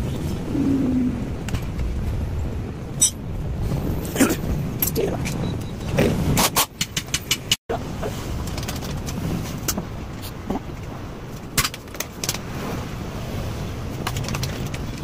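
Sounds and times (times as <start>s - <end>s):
metal tools clinking: 3.0s - 3.2s.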